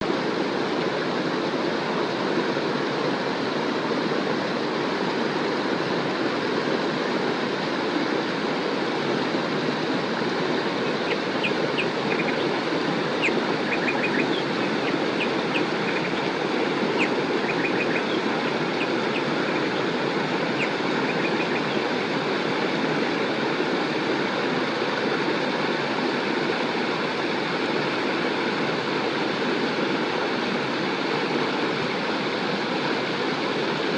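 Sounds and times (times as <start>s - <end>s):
river water rushing: 0.0s - 33.9s
bird chirps: 11.4s - 12.4s, 13.2s - 16.2s, 17.0s - 18.2s.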